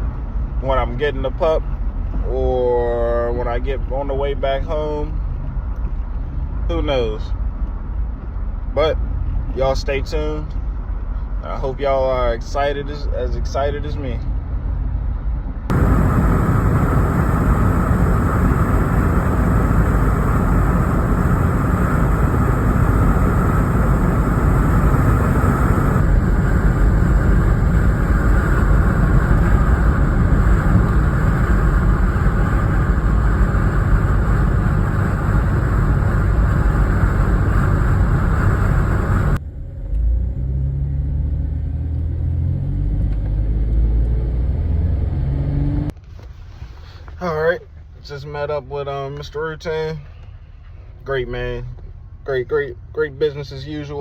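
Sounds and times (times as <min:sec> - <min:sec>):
road and wind rumble: 0:00.0 - 0:54.0
car engine accelerating: 0:15.7 - 0:46.0.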